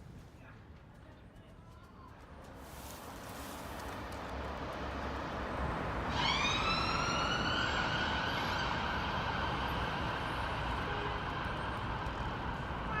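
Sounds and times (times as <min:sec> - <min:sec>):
street noise: 0:00.0 - 0:13.0
siren: 0:06.0 - 0:09.6.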